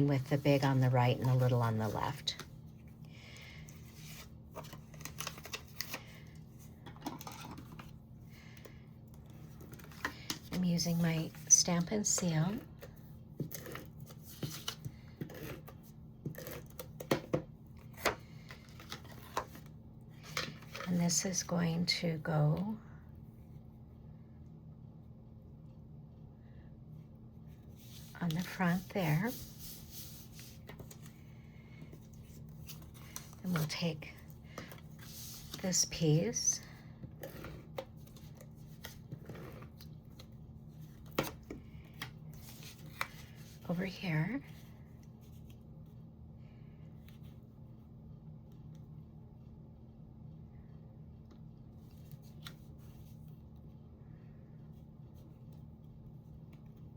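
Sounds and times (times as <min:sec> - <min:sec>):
faint steady hum: 0:00.0 - 0:56.9
paper rustling: 0:27.8 - 0:31.2.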